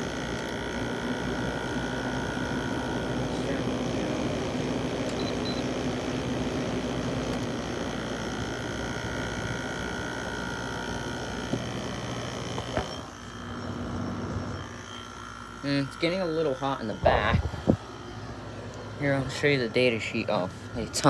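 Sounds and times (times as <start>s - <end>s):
air conditioner click: 0.0s - 3.2s, 4.8s - 13.2s
air conditioner running: 0.0s - 21.0s.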